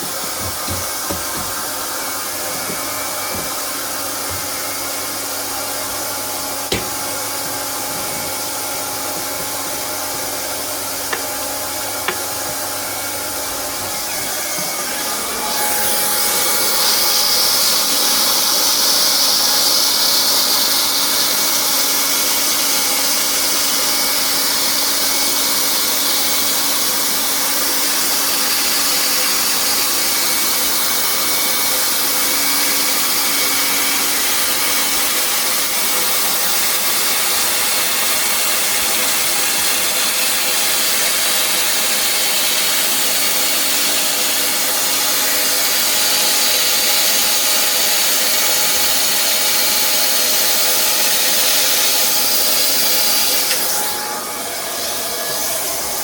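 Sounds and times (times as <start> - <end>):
heat gun blowing: 0.0 - 22.0, 36.5 - 56.0.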